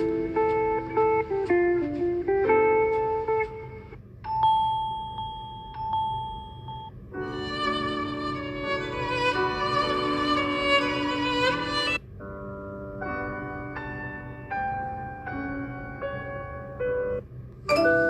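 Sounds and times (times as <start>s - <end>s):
plucked-string ringtone melody: 0.0s - 12.0s, 17.7s - 18.0s
ringtone melody with strings: 3.6s - 12.0s, 17.7s - 18.0s
ringtone chime: 4.2s - 8.2s, 17.7s - 18.0s.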